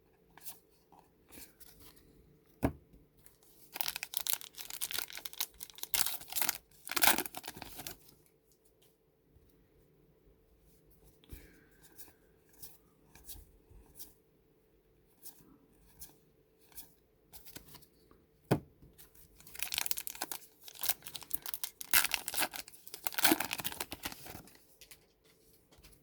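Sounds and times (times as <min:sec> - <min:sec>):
wrapper tearing and crinkling: 0:03.7 - 0:08.0, 0:19.4 - 0:24.6.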